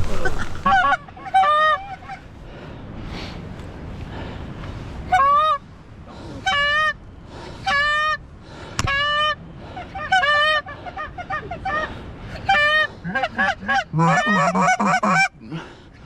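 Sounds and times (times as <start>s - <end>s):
sharp crack: 0.0s - 0.9s.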